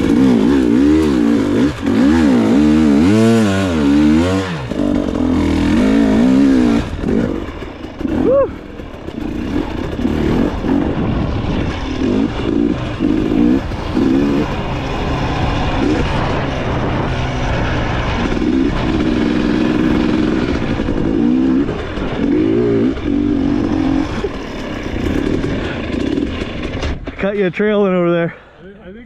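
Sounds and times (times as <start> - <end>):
motorcycle engine revving: 0.0 - 27.5.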